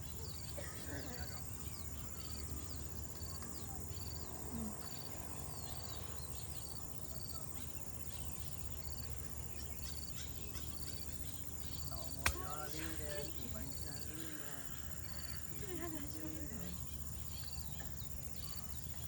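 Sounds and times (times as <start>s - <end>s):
high insect drone: 0.0s - 19.0s
bird chirps: 14.7s - 19.0s.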